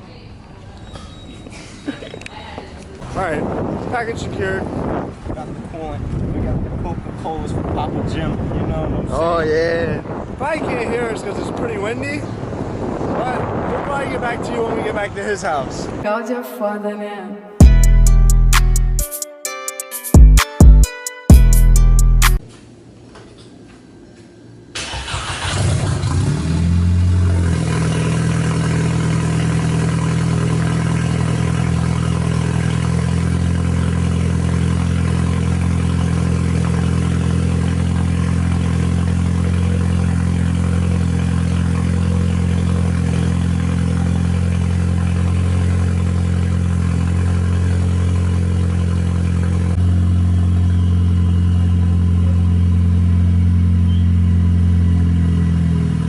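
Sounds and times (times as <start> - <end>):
car engine cranking and idling: 24.8 - 56.0.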